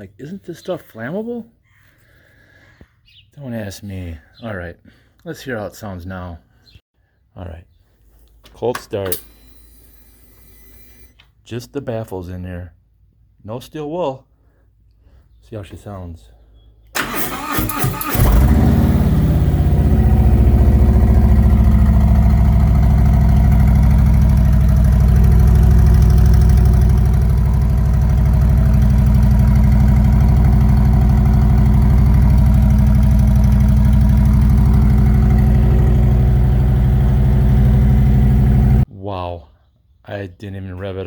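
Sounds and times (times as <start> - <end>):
motorcycle engine idling loudly: 18.2 - 38.8.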